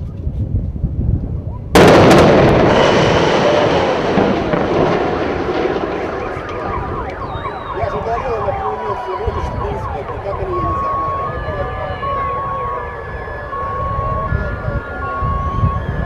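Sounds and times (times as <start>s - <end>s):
long rumble: 1.7s - 7.6s
explosion blast: 1.8s - 8.6s
wailing alarms: 1.8s - 16.0s.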